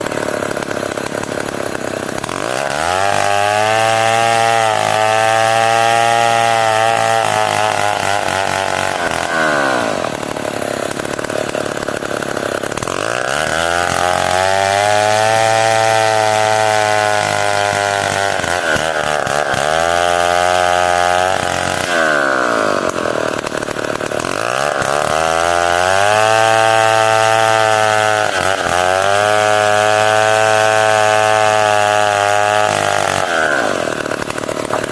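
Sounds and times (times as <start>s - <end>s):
chainsaw revving and cutting: 0.0s - 34.9s.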